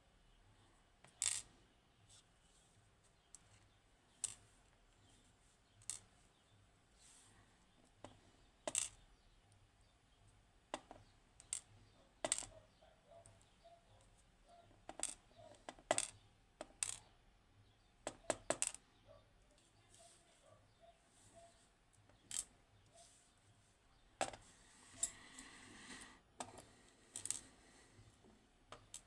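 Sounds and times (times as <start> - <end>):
metal lock parts clinking: 24.2 - 25.5.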